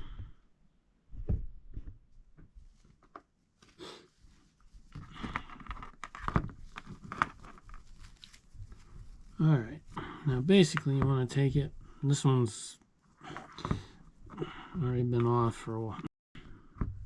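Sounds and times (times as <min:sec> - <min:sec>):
rustling: 0:02.3 - 0:10.0.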